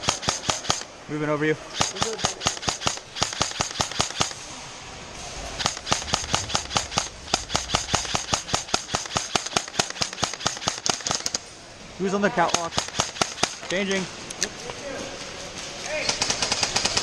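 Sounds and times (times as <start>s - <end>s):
airsoft guns firing: 0.0s - 0.9s, 1.7s - 4.4s, 5.5s - 11.5s, 12.4s - 14.0s, 15.9s - 17.0s.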